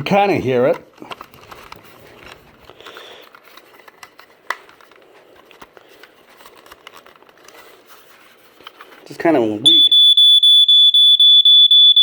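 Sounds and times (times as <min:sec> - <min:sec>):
faint smoke alarm horn: 0:09.7 - 0:12.0.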